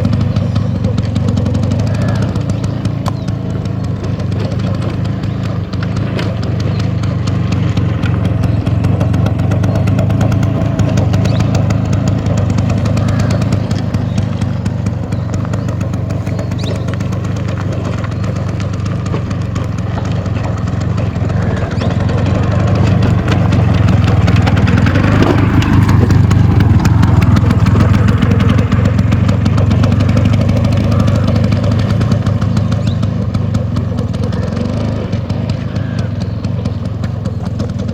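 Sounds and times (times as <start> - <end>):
scooter engine putter: 0.0 - 37.9.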